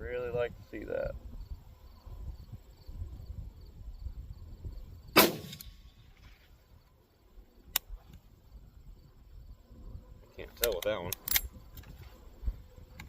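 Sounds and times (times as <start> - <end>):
crickets chirping: 0.0 - 13.0
rifle shot with echo: 5.1 - 5.9
sharp rifle click: 5.2 - 5.8, 7.7 - 7.9, 10.6 - 11.5.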